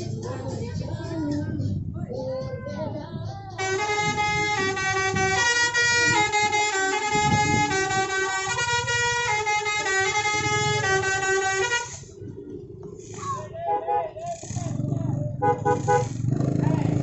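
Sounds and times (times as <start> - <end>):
multi-tone musical air horn: 3.6 - 12.1, 15.4 - 16.2.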